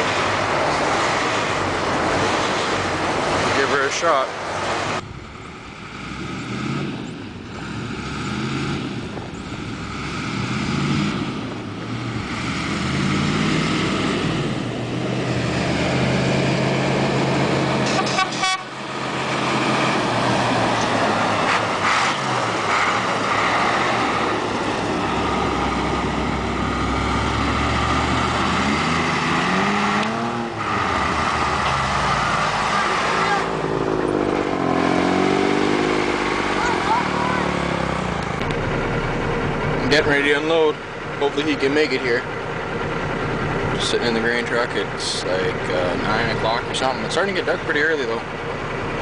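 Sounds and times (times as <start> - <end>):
engine starting and running: 19.2 - 49.0.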